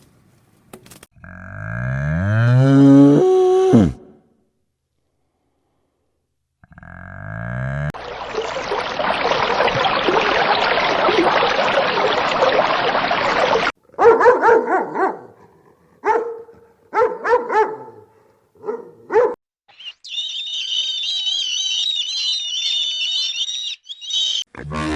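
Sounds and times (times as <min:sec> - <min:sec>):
dog barking: 0:13.9 - 0:19.4.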